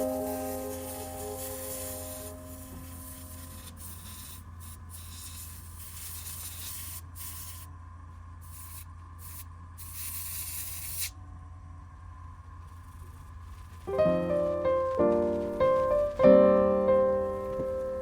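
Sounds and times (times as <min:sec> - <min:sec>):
hissing spray bursts: 0:00.0 - 0:07.7, 0:08.4 - 0:11.2
steady low hum: 0:00.0 - 0:18.0.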